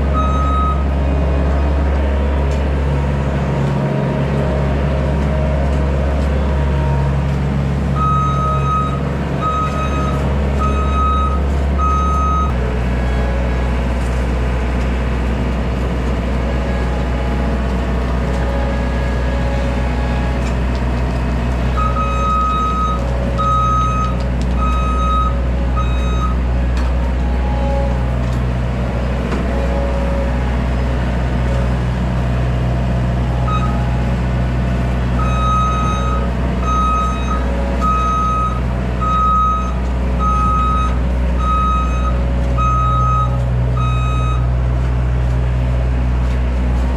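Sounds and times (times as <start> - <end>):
diesel engine running: 0.0 - 46.9
backup alarm beeping: 0.1 - 0.9, 8.0 - 12.6, 21.8 - 26.4, 33.4 - 33.9, 35.2 - 44.5.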